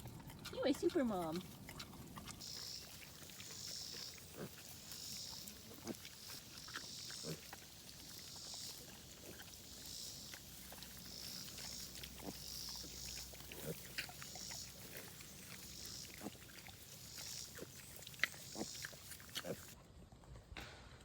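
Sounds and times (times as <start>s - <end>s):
pigs grunting softly: 0.0s - 20.8s.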